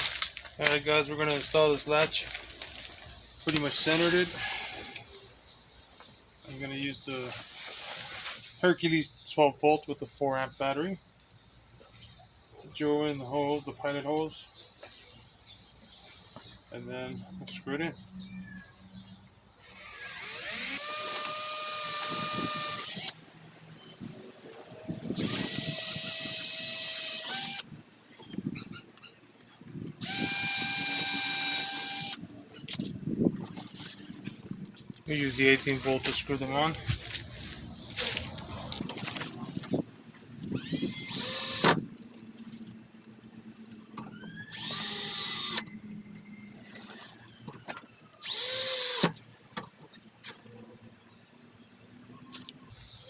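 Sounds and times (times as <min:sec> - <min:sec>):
cordless drill motor whine: 0:19.6 - 0:23.2, 0:24.9 - 0:27.6, 0:30.0 - 0:32.2, 0:40.5 - 0:41.8, 0:44.1 - 0:45.7, 0:48.2 - 0:49.1.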